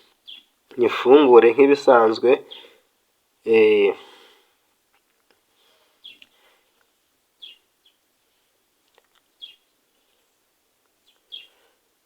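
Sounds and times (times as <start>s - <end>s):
bird chirping faintly: 0.1s - 0.6s, 7.4s - 8.1s, 9.2s - 11.6s.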